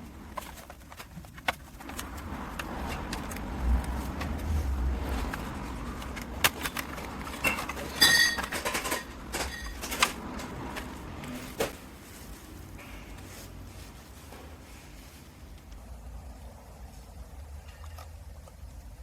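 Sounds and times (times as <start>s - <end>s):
tools clicking and knocking: 5.2s - 11.3s.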